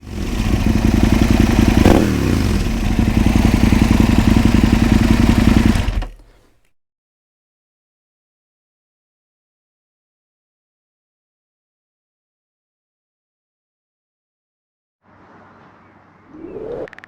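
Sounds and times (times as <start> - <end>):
motorcycle engine running: 0.0 - 6.3.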